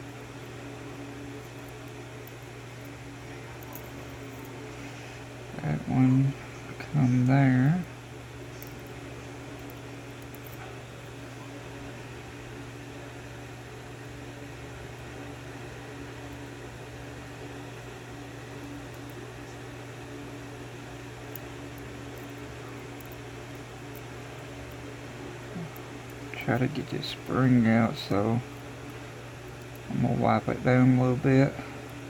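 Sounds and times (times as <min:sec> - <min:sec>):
low machine hum: 0:00.0 - 0:32.0.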